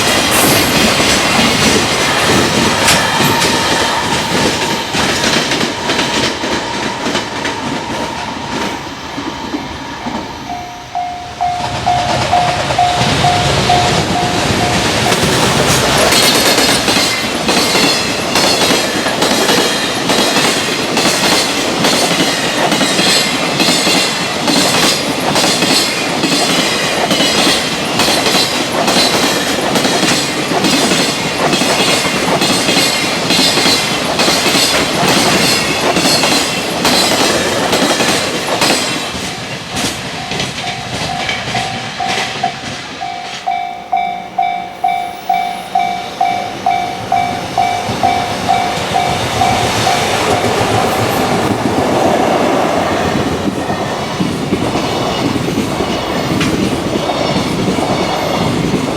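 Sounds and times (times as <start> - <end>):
level crossing warning bell: 0.0 - 24.6, 31.7 - 51.5
freight train wheels clacking: 0.0 - 58.9.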